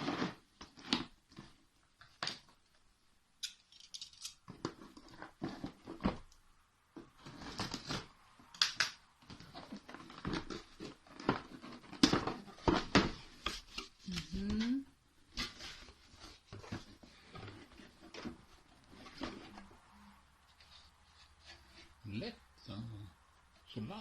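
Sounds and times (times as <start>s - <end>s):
packaging rustling: 9.2s - 14.4s.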